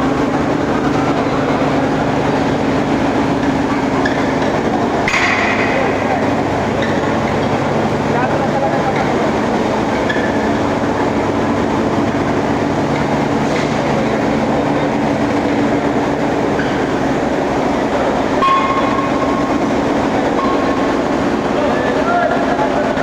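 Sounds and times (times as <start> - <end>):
machinery rumble: 0.0 - 23.0.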